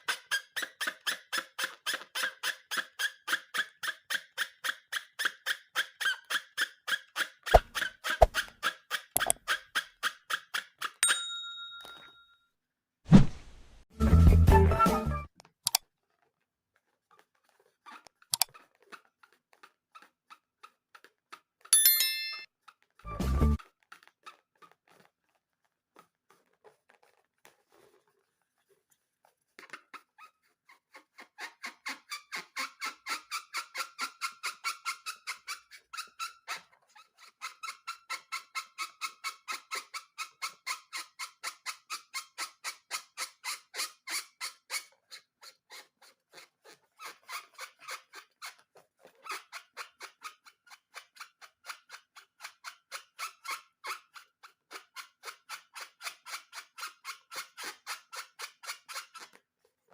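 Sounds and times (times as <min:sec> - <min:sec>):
scissors snipping rubber balloons: 0:07.2 - 0:09.6.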